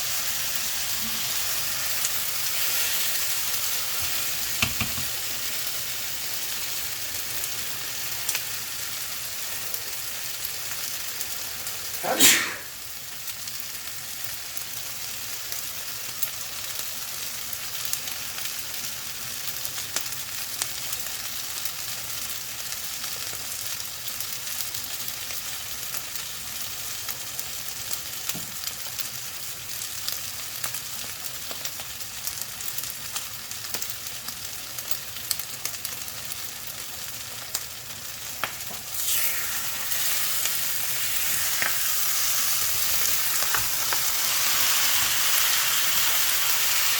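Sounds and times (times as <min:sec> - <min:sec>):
fried rice sizzling in a pan: 0:00.0 - 0:46.9.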